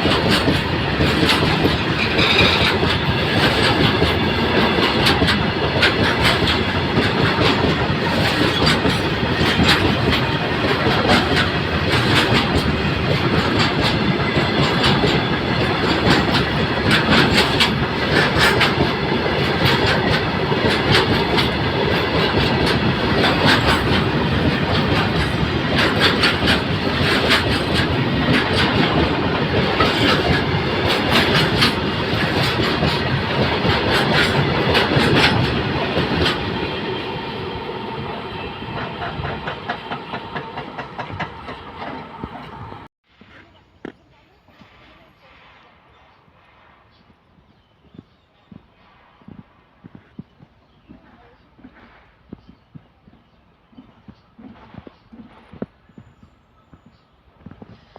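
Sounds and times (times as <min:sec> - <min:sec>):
wheels clicking over rail joints: 0:00.0 - 0:37.0, 0:38.1 - 0:42.7
freight train rumbling and rattling: 0:00.0 - 0:42.9.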